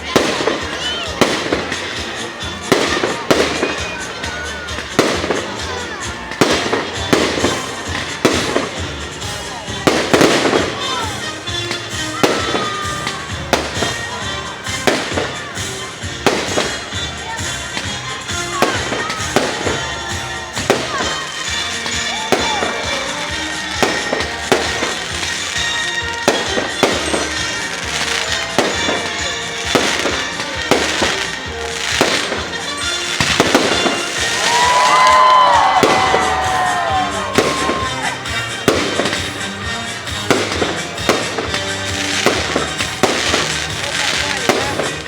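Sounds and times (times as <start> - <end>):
fireworks bangs: 0.0 - 45.0
firework shells whistling: 32.0 - 39.5.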